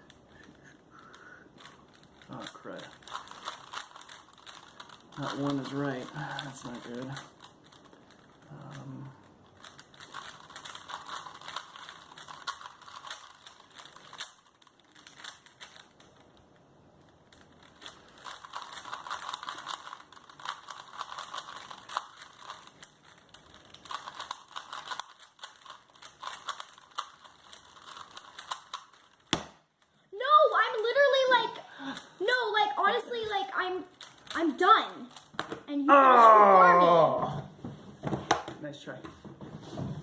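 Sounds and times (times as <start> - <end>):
puzzle cubes clicking as twisted: 0.1 - 16.4, 17.1 - 29.5.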